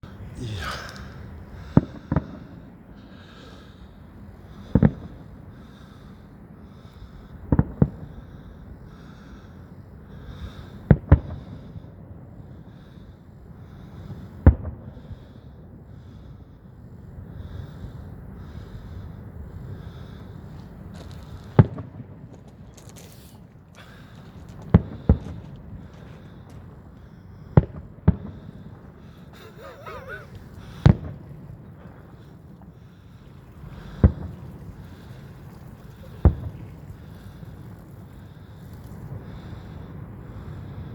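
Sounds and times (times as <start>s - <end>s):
fireworks bangs: 0.4s - 2.7s, 4.6s - 5.3s, 7.5s - 8.1s, 21.5s - 26.8s, 27.5s - 38.2s.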